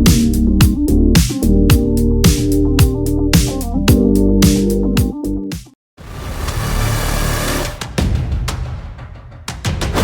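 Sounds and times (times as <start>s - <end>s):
drum machine beat: 0.0s - 5.7s.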